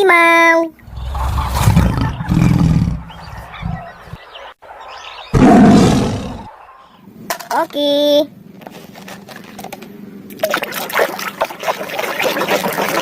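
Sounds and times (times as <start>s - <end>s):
tiger roaring: 0.8s - 4.1s, 5.3s - 6.6s.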